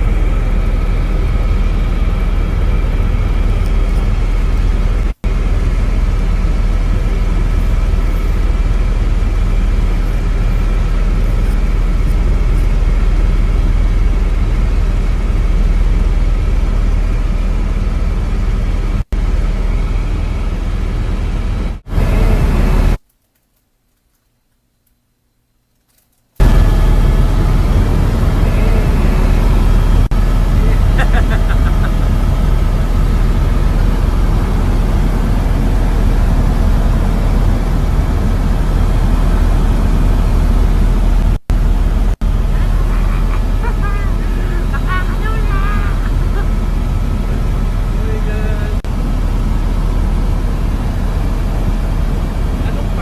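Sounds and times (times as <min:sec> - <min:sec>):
helicopter engine and rotor: 0:00.0 - 0:23.0, 0:26.4 - 0:53.0.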